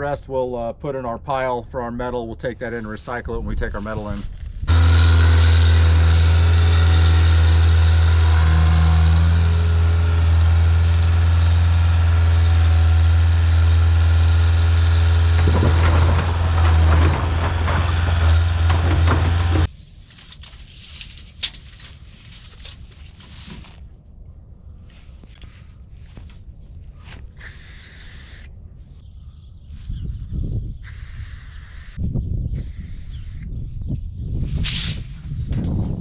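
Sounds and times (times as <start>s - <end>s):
diesel engine running: 4.7s - 19.7s
clanking and rattling: 15.0s - 19.7s.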